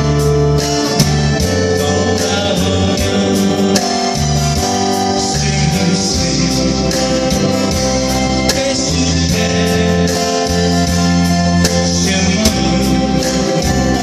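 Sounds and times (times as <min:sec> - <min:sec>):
guitar music with steady beat: 0:00.0 - 0:14.0.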